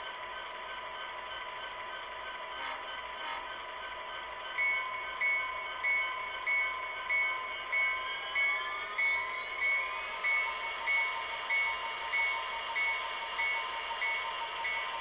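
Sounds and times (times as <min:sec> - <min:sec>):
diesel locomotive engine: 0:00.0 - 0:15.0
rising engine whine: 0:00.0 - 0:15.0
locomotive bell ringing: 0:04.5 - 0:15.0.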